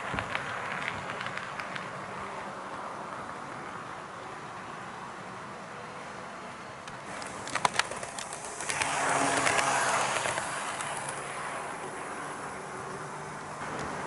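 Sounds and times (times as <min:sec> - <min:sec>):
model train rolling on track: 0:05.6 - 0:14.0
sharp wheel clicks: 0:06.8 - 0:11.4.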